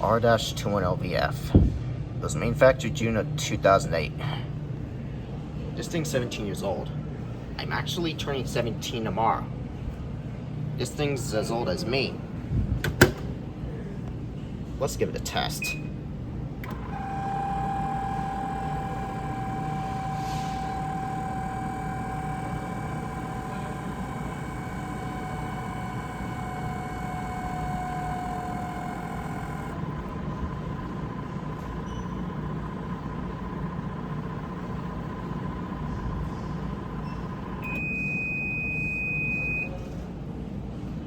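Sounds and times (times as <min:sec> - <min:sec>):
fan motor whine: 0:10.7 - 0:40.3
microwave fan hum: 0:11.0 - 0:40.5
long steady beep: 0:37.0 - 0:39.8.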